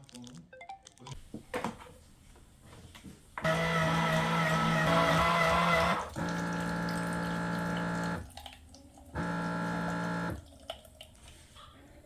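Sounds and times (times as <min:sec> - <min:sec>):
pump and motor humming: 0:03.4 - 0:10.6.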